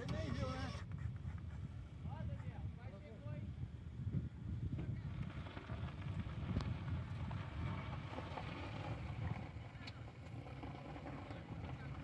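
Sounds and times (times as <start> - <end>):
wind buffeting microphone: 0.0 - 9.6.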